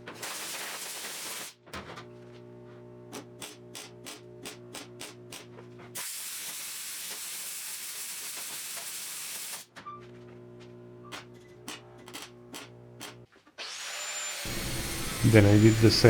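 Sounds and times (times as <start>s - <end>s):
loud steady hiss: 14.5s - 16.0s.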